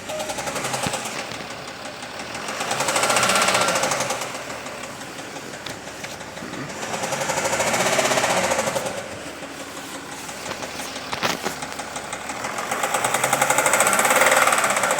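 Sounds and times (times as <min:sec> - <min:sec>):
diesel engine revving: 0:00.0 - 0:14.9.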